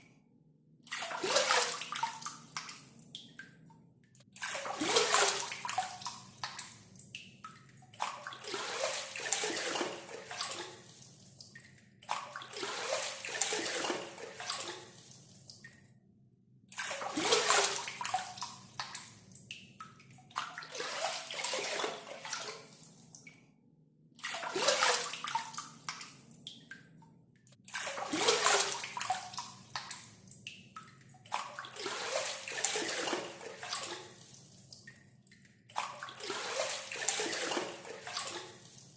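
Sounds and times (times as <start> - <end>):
water scooped and splashing: 0.9 - 2.9, 4.4 - 6.8, 8.0 - 11.0, 12.1 - 15.2, 16.8 - 19.1, 20.3 - 23.3, 24.2 - 26.2, 27.7 - 30.1, 31.3 - 34.3, 35.8 - 38.8.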